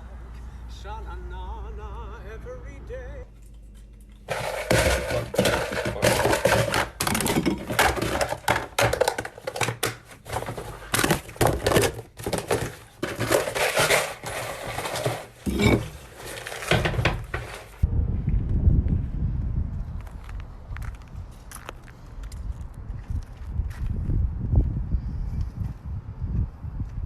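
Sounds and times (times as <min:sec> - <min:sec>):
hard objects clattering: 0:04.2 - 0:17.8
low rumble: 0:17.8 - 0:21.4.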